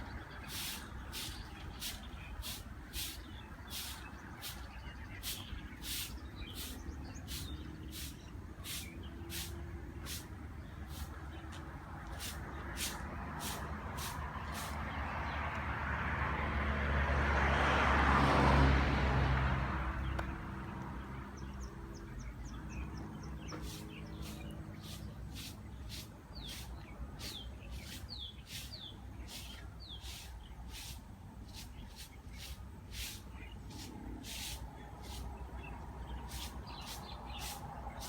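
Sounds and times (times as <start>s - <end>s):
high bird chirps: 0.0s - 10.2s, 22.9s - 35.2s
motor vehicle passing by: 0.0s - 38.0s.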